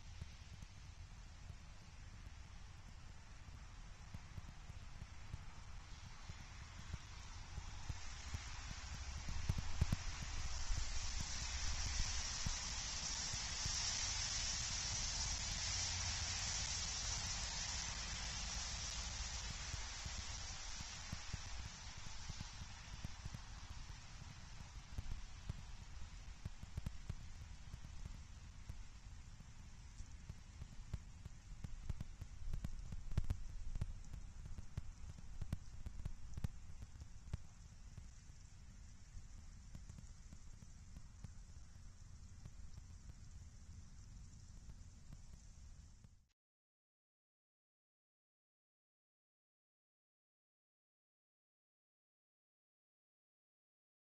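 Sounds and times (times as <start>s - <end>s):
wind-driven snow hissing: 0.0s - 42.6s.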